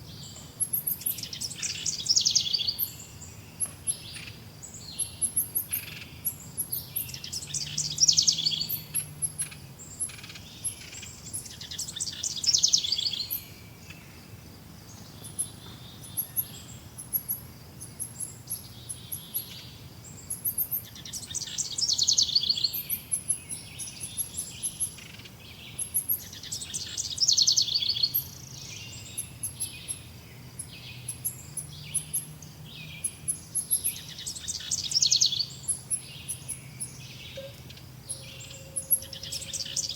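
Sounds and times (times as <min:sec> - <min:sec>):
trilled bird song: 0:00.0 - 0:39.9
high bird chirps: 0:33.0 - 0:39.9.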